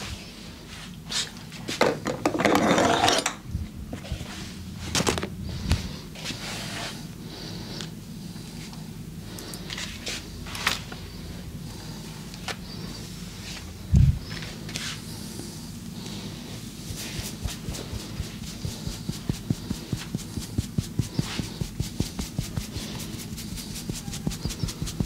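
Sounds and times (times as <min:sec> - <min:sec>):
hands rubbing skin and clothing: 0:13.4 - 0:15.2, 0:16.6 - 0:25.0.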